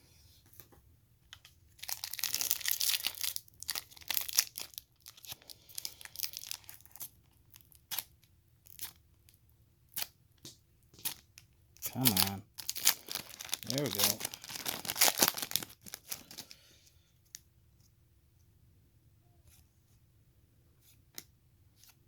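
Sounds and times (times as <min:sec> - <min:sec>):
foil wrapper tearing and crinkling: 0:01.8 - 0:09.0, 0:11.8 - 0:16.6.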